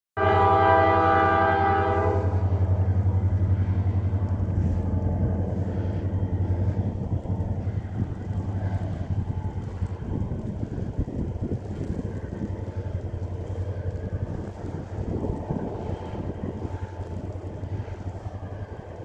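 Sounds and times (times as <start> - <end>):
locomotive air horn chord: 0.2 - 2.6
deep locomotive engine rumble: 0.2 - 19.0.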